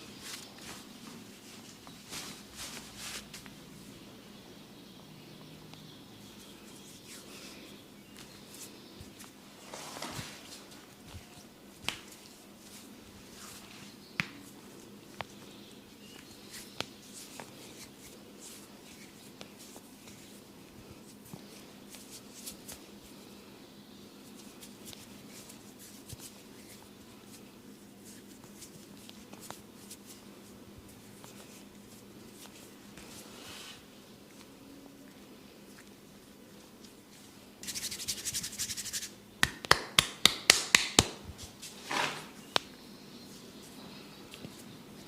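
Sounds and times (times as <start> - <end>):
hands rubbing head: 36.6 - 41.8.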